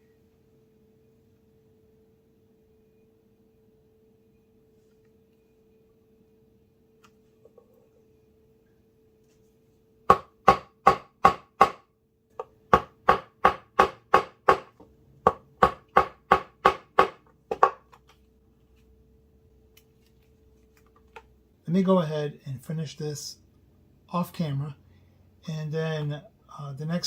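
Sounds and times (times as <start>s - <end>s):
mallet striking chisel: 10.1s - 11.8s, 12.4s - 14.7s, 15.3s - 17.8s.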